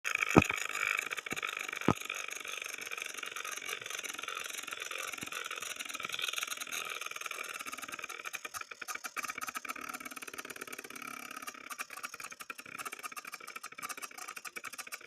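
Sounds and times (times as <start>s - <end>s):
sharp click: 0.3s - 0.6s.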